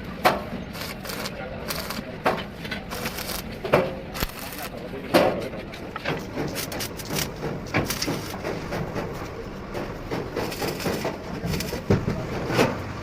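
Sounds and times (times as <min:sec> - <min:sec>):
steady background noise: 0:00.0 - 0:13.0
irregular knocks and clatter: 0:05.1 - 0:12.8.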